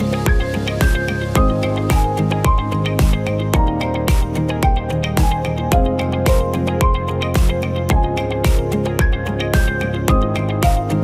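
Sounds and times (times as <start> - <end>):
low thumping beat: 0.0 - 11.0.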